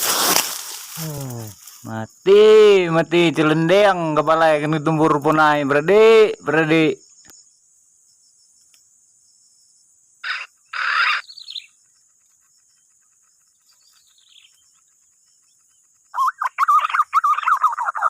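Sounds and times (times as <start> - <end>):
loud rustling bursts: 0.0 - 1.8
insects shrilling: 0.0 - 18.0
loud warbling bird call: 10.2 - 11.7, 16.1 - 18.0.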